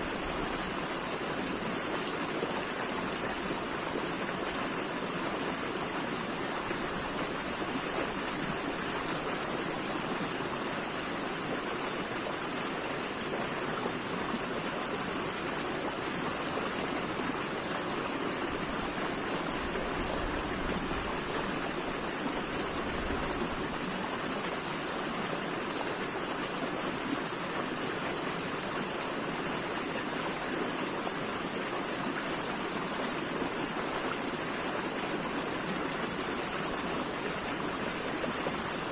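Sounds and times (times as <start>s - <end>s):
stream water flowing: 0.0s - 38.9s.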